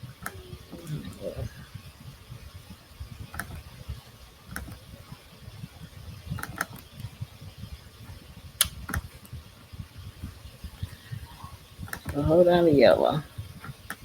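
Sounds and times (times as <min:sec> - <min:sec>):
computer clicks: 0:04.5 - 0:04.8.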